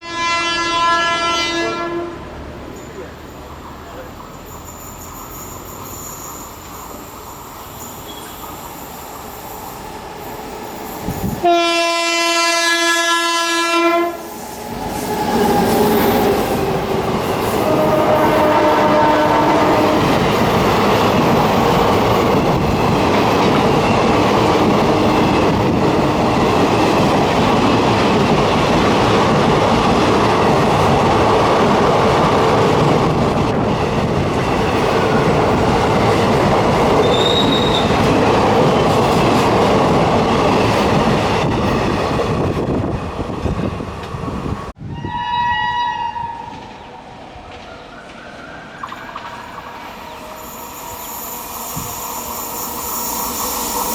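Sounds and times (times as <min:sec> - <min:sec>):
train horn blast: 0:00.0 - 0:02.3, 0:11.4 - 0:14.3, 0:17.6 - 0:20.2, 0:44.9 - 0:46.7
train wheels rushing on rails: 0:00.0 - 0:44.8, 0:46.2 - 0:53.9.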